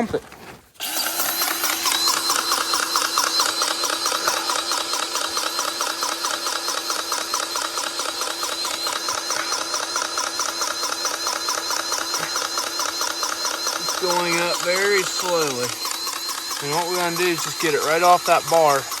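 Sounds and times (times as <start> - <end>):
grease gun pumping: 0.8 - 19.0.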